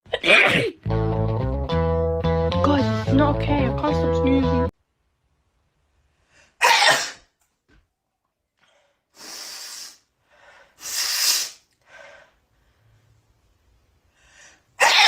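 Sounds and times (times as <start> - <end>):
woman sneezing: 6.6 - 7.2, 14.8 - 15.0.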